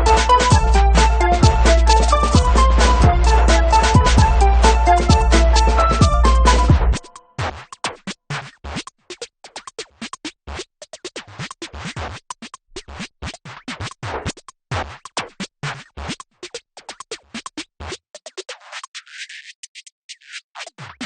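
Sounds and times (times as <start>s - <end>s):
low bass hits: 0.0s - 7.0s
choppy electronic music: 0.0s - 7.3s.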